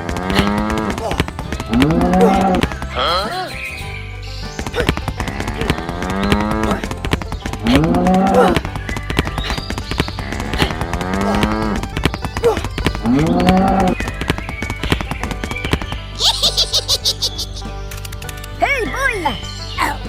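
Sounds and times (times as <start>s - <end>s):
music with clicking beat: 0.0s - 20.0s
cow mooing: 10.3s - 11.9s.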